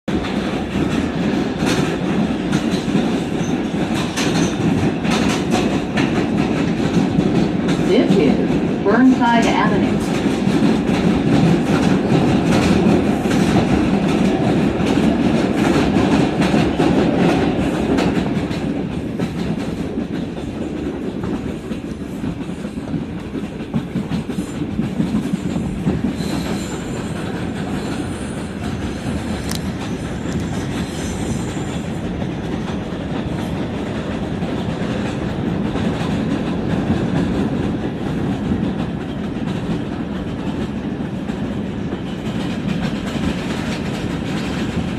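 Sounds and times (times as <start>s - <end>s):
wheels clacking over rail joints: 0.1s - 7.9s
subway wheels rumbling on rail: 0.1s - 44.9s.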